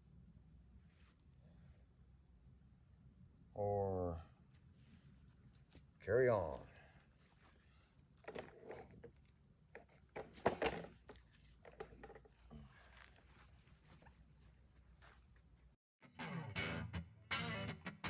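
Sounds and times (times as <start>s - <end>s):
crickets trilling: 0.0s - 15.8s
handling knocks and rustles: 8.2s - 14.2s.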